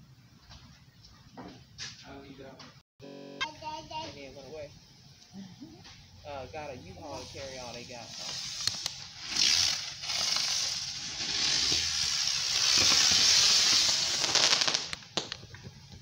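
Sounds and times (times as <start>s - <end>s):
firework hissing: 7.0s - 15.6s
firework crackling: 7.0s - 16.0s.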